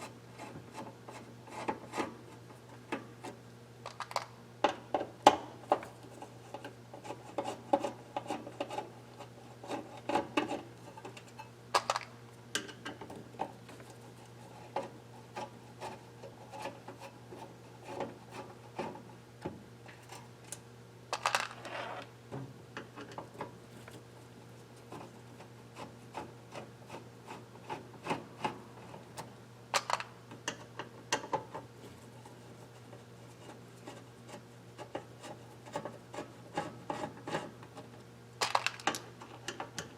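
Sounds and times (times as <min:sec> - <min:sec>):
tools clicking and scraping on casing: 0:03.9 - 0:04.3, 0:11.8 - 0:12.1, 0:21.2 - 0:21.7, 0:29.8 - 0:30.6, 0:38.4 - 0:39.9.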